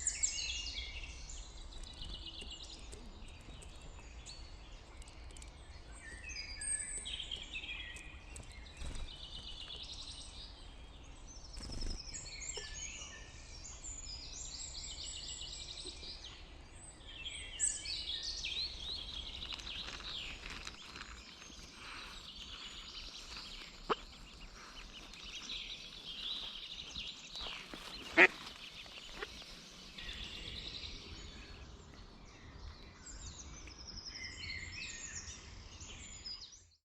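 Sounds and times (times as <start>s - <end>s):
songbirds singing: 0.0s - 36.8s.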